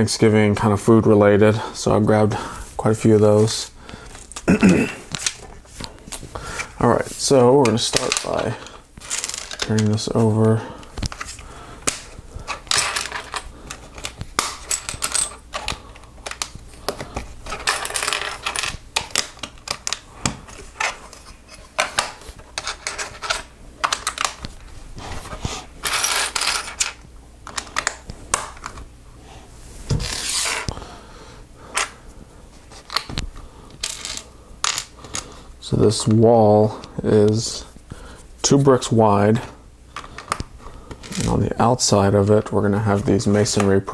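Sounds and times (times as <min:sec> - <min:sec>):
loose pieces rattling: 0:07.7 - 0:10.0, 0:11.1 - 0:16.6, 0:17.4 - 0:24.4, 0:25.8 - 0:28.8, 0:33.8 - 0:35.3
plastic pieces clicking: 0:11.0 - 0:21.0, 0:21.8 - 0:24.6.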